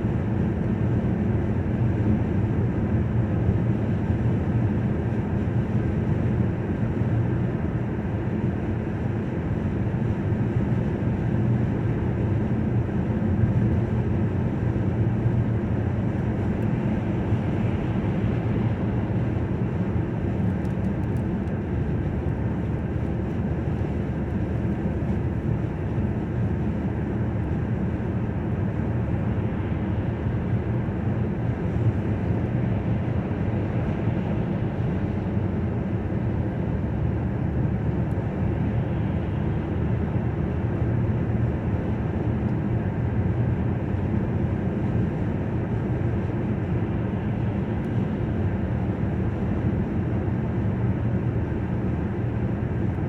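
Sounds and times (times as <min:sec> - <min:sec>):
car road and engine rumble: 0:00.0 - 0:53.0.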